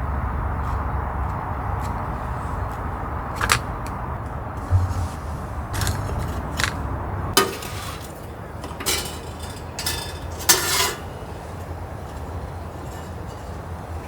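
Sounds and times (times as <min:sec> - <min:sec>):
steady low rumble: 0:04.4 - 0:07.4
utensils clacking and scraping: 0:04.6 - 0:06.8.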